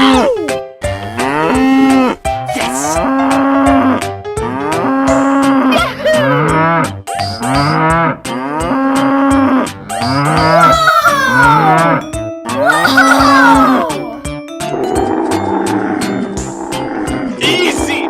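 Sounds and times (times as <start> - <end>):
music: 0.0 - 18.0
cartoon cow mooing: 1.0 - 6.8, 7.5 - 14.3.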